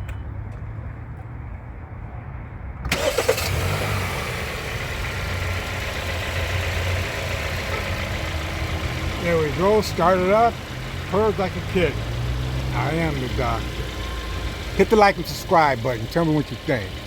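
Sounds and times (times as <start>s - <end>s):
car engine starter cranking: 2.9s - 11.9s
car engine idling: 2.9s - 17.0s.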